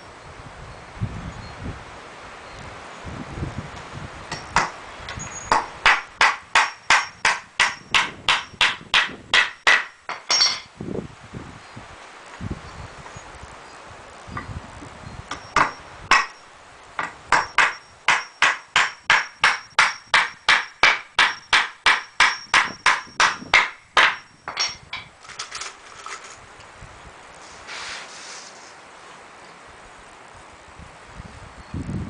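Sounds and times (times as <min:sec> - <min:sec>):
hammer driving a nail into wood: 0:05.5 - 0:10.4, 0:15.3 - 0:16.4, 0:17.0 - 0:24.7.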